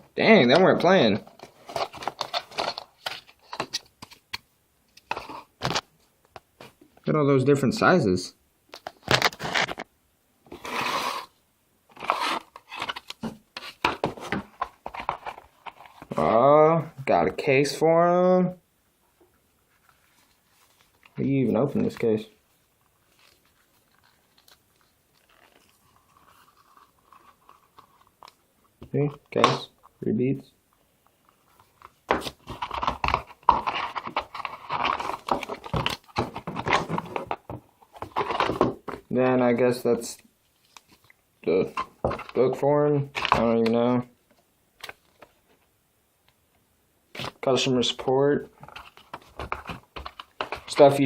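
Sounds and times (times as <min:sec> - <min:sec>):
cardboard and plastic scraping: 0:00.7 - 0:04.2, 0:05.0 - 0:05.8, 0:08.8 - 0:09.9, 0:10.5 - 0:16.2, 0:31.3 - 0:39.1, 0:40.7 - 0:43.5, 0:48.5 - 0:51.0
packaging rustling: 0:01.2 - 0:04.2, 0:22.8 - 0:28.4, 0:31.2 - 0:39.0, 0:48.6 - 0:51.0.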